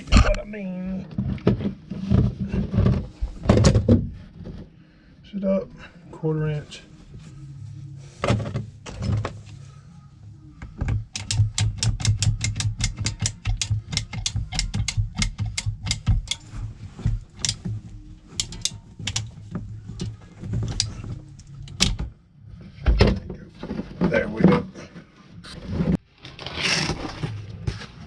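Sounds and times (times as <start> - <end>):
crimp tool ratchet clicks: 11.1 - 16.4, 18.4 - 19.3.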